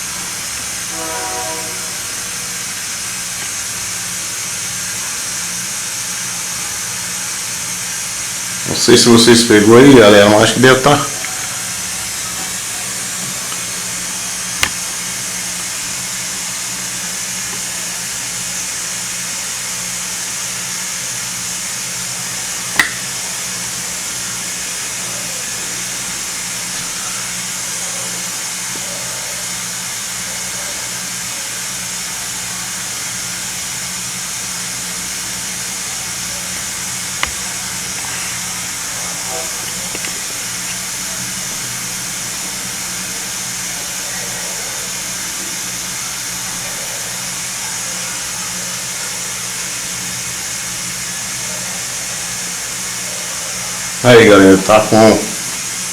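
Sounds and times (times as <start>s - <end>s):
air compressor humming and hissing: 0.0s - 55.9s.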